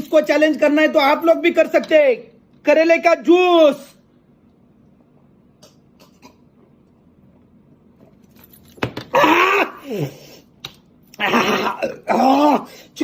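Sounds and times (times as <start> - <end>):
person clearing throat and grunting: 5.6 - 6.6, 9.1 - 10.3, 11.2 - 12.8.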